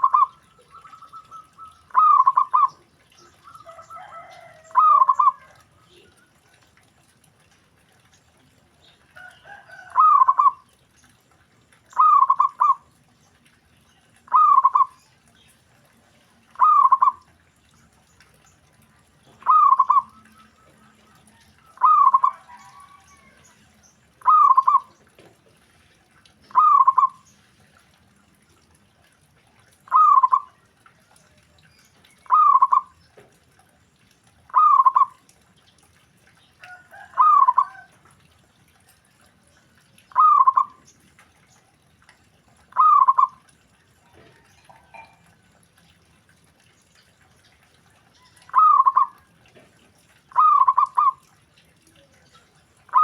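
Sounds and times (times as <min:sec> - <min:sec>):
fainter bird call: 0:00.0 - 0:02.8, 0:03.4 - 0:06.0, 0:09.8 - 0:10.6, 0:14.3 - 0:15.0, 0:16.6 - 0:17.2, 0:19.4 - 0:20.6, 0:21.7 - 0:23.6, 0:24.2 - 0:24.9, 0:26.5 - 0:27.2, 0:29.9 - 0:30.5, 0:34.5 - 0:35.2, 0:40.1 - 0:40.8, 0:42.8 - 0:43.4, 0:48.5 - 0:49.2, 0:50.3 - 0:51.2
dove cooing: 0:00.0 - 0:06.3, 0:09.2 - 0:10.6, 0:11.9 - 0:12.8, 0:14.3 - 0:15.0, 0:16.5 - 0:17.2, 0:19.3 - 0:23.5, 0:24.2 - 0:25.0, 0:26.5 - 0:27.2, 0:29.9 - 0:30.6, 0:32.2 - 0:33.0, 0:34.5 - 0:35.2, 0:36.7 - 0:38.0, 0:40.1 - 0:40.8, 0:42.7 - 0:43.5, 0:48.4 - 0:49.2, 0:50.3 - 0:51.2.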